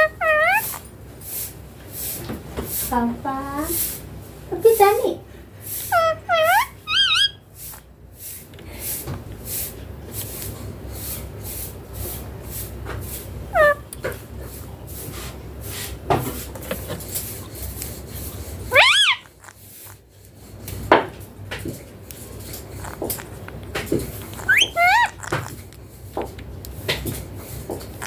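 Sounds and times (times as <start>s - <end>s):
parakeet whistled calls: 0.0s - 0.8s, 5.9s - 7.5s, 13.5s - 13.8s, 18.7s - 19.4s, 24.3s - 25.5s.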